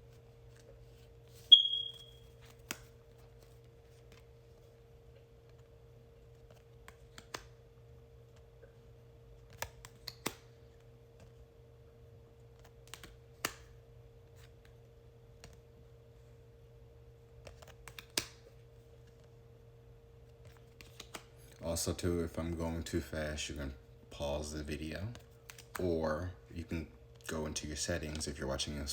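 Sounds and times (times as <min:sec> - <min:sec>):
cards clicking and tapping: 0:02.4 - 0:04.3, 0:06.3 - 0:07.5, 0:09.4 - 0:10.5, 0:12.6 - 0:13.8, 0:15.4 - 0:15.6, 0:17.4 - 0:19.3, 0:20.4 - 0:21.3, 0:25.1 - 0:25.8.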